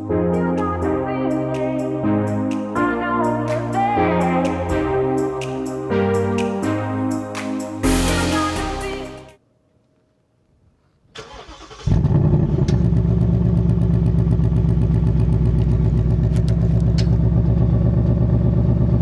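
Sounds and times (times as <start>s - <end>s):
car engine cranking: 11.2s - 13.2s
car engine running: 12.6s - 19.0s.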